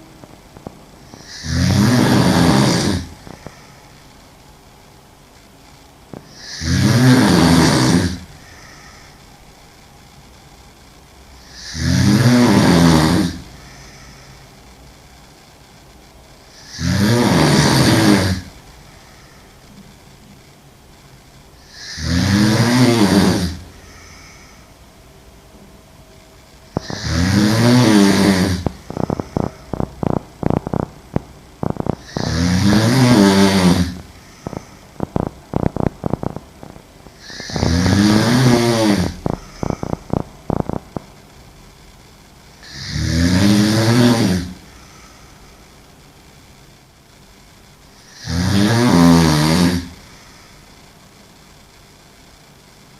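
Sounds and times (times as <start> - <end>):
woman snoring loudly: 1.0 - 3.6, 6.2 - 8.9, 11.4 - 13.8, 16.5 - 18.6, 21.6 - 24.7, 26.7 - 41.0, 42.6 - 45.0, 48.0 - 50.2.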